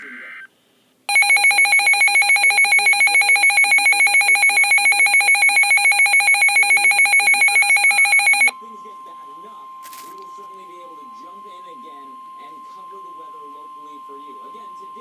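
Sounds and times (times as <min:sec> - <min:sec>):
shrill fluttering electronic alarm: 0:01.1 - 0:08.5.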